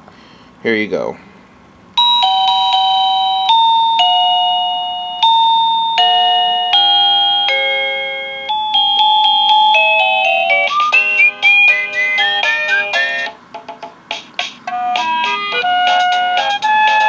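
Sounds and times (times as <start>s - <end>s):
electronic doorbell chime melody: 2.0s - 13.3s, 14.7s - 17.0s.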